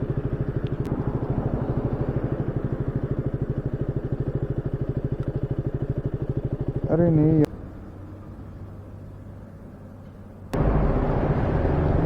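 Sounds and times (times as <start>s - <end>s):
motorcycle engine idling: 0.0s - 9.6s.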